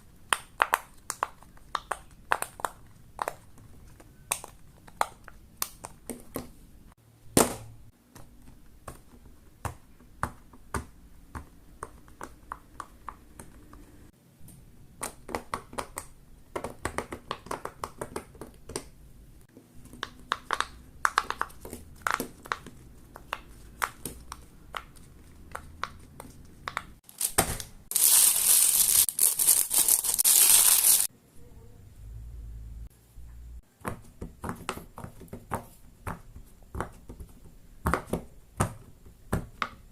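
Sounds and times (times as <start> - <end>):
loud crinkling crushing noise: 27.0 - 31.1.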